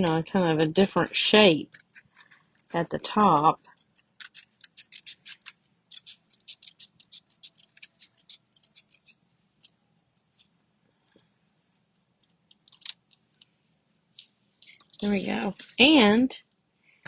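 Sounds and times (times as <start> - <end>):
scissors snipping paper: 0.6 - 9.8, 12.2 - 13.1.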